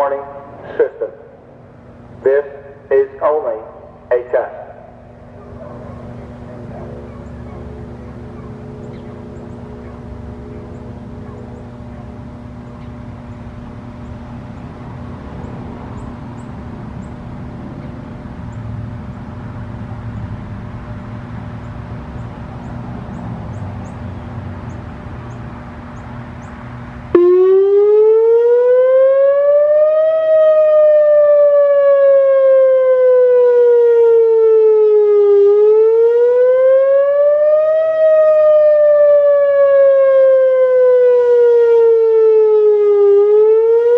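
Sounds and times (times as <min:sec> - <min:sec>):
low background rumble and hum: 0:00.0 - 0:27.2
warning siren wailing: 0:00.0 - 0:43.9.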